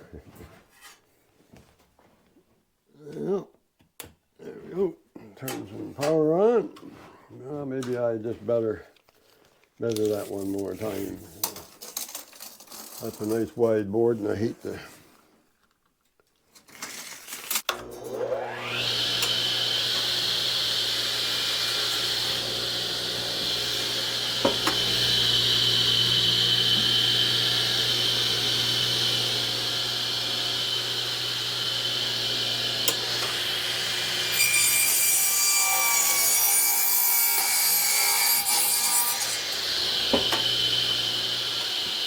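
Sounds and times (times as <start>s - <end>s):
electric saw motor whine: 17.8s - 36.3s, 38.5s - 42.0s
saw blade cutting board: 17.8s - 42.0s.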